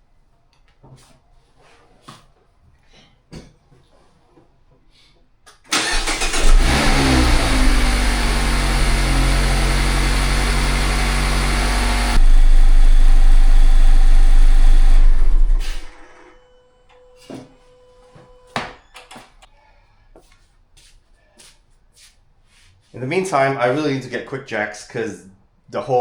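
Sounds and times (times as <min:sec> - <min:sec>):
car engine starting and idling: 0:05.7 - 0:16.5.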